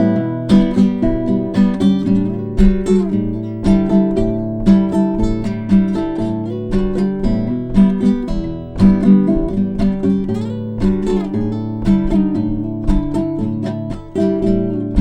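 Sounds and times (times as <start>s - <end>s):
acoustic guitar strumming chords: 0.0s - 15.0s.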